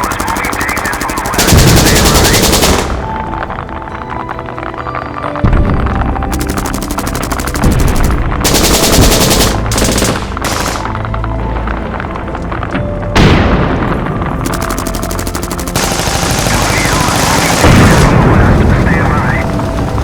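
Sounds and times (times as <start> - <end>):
machine-gun fire: 0.0 - 3.3, 6.3 - 11.1, 14.4 - 20.0
low background soundtrack: 0.0 - 20.0
explosion blast: 13.2 - 14.4, 17.1 - 19.0.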